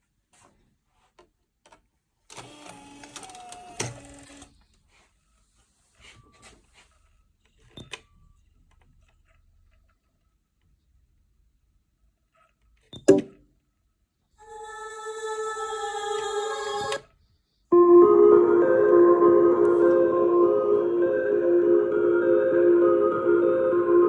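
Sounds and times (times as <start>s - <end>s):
small motorised mechanism whirring: 2.3s - 4.6s.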